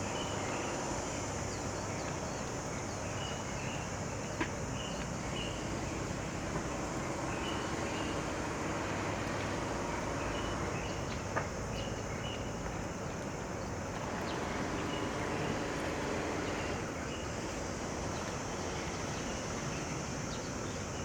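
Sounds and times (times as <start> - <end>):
low rumble of distant motors: 0.0 - 21.0.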